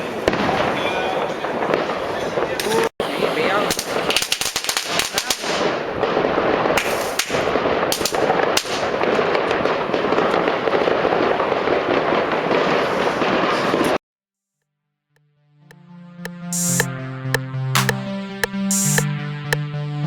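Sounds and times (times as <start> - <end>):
fireworks bangs: 0.1 - 14.0
fireworks crackling: 2.7 - 13.8.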